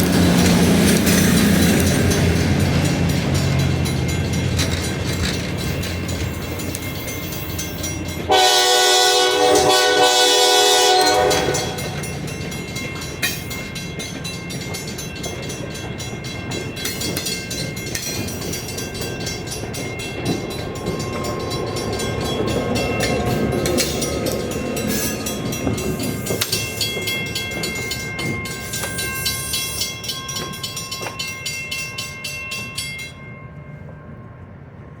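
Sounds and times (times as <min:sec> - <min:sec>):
train wheels clicking over rails: 0:00.0 - 0:33.0
train horn blast: 0:08.3 - 0:12.0.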